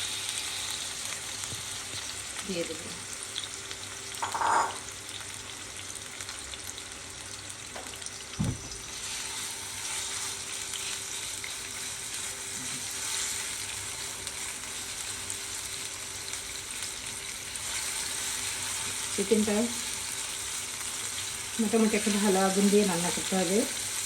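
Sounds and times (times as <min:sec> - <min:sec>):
chicken sizzling in oil: 0:00.0 - 0:24.0
knock: 0:08.4 - 0:08.7.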